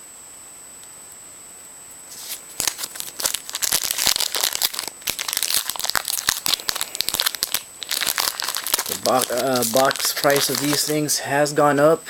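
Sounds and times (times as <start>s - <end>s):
wrapper crinkling and tearing: 2.1s - 11.1s.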